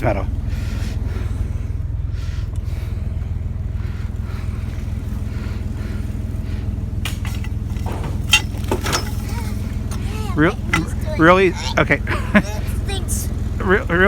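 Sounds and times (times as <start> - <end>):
pickup truck engine idling: 0.0 - 14.0
scrap metal clanking: 6.0 - 11.8.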